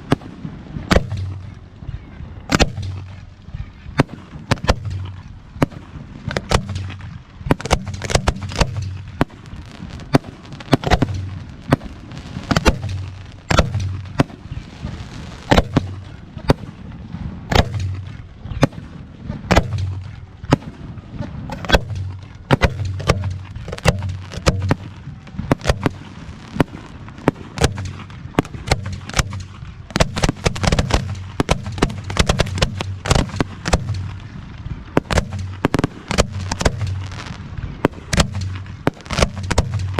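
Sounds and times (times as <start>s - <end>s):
low rumble: 0.0s - 39.9s
firework shell bursts: 4.5s - 14.5s, 21.5s - 34.2s, 35.0s - 39.9s.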